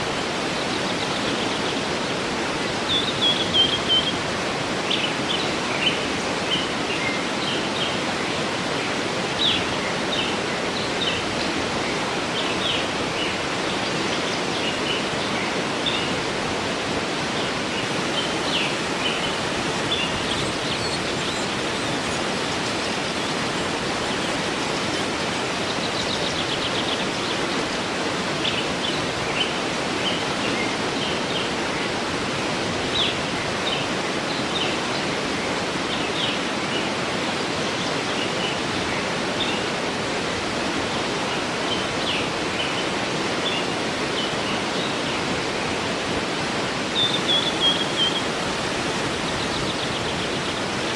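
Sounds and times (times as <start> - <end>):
birds chirping: 0.0 - 8.4, 9.0 - 32.0, 46.9 - 50.9
waterfall rushing: 0.0 - 50.9.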